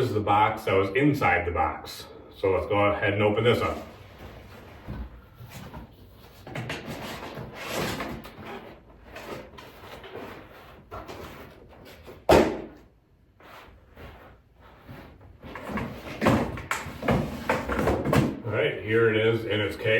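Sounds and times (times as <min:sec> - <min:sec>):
cardboard rustling and scraping: 0:03.6 - 0:12.3.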